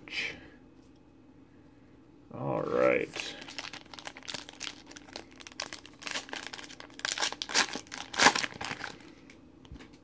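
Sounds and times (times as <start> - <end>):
foil wrapper tearing and crinkling: 3.3 - 9.1.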